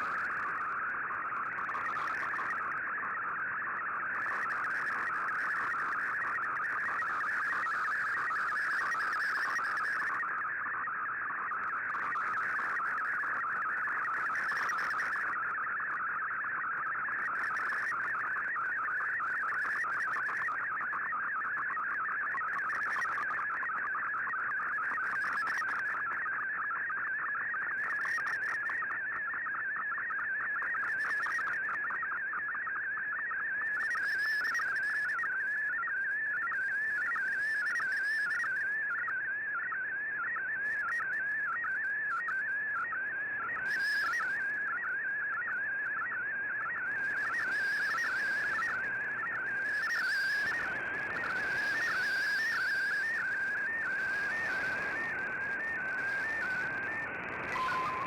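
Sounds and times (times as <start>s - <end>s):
warbling data signal tones: 0.0s - 58.0s
faint radio hiss: 46.9s - 58.0s.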